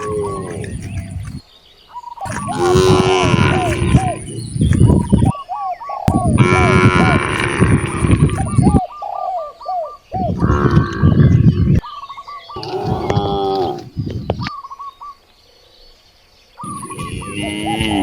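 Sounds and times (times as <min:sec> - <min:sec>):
cattle mooing: 0:00.0 - 0:01.1, 0:02.3 - 0:05.1, 0:06.4 - 0:08.8, 0:12.6 - 0:14.4, 0:16.6 - 0:18.0
birds chirping: 0:00.0 - 0:18.0.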